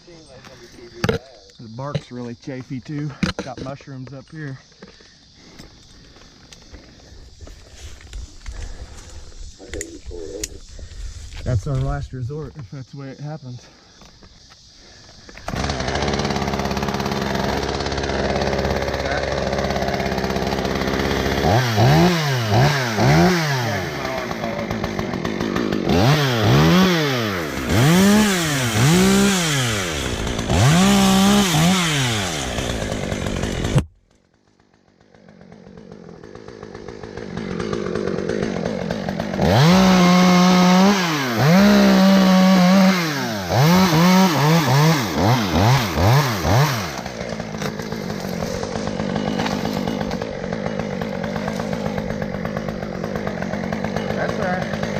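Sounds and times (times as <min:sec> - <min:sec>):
chainsaw revving: 0:15.2 - 0:54.9.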